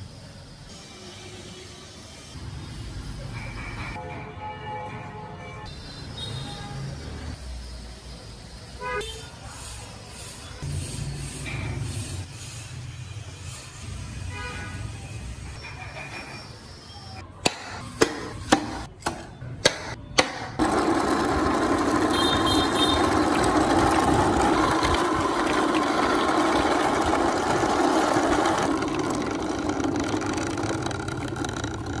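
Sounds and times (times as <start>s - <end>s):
motor running: 20.6s - 32.0s.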